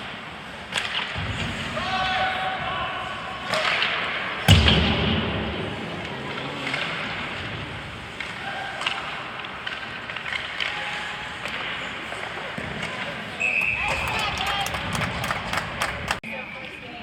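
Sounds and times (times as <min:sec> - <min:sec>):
puck bang against rink boards: 0:03.4 - 0:13.9
low boom: 0:04.5 - 0:06.5
faint voices: 0:05.4 - 0:09.6
sticks and skates clicking: 0:06.0 - 0:16.2.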